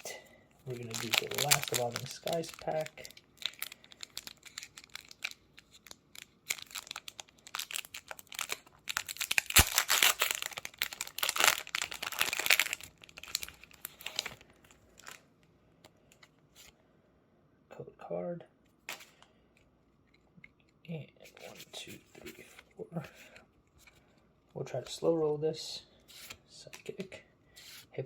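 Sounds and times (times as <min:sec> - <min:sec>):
foil wrapper crinkling and tearing: 0:00.7 - 0:15.2.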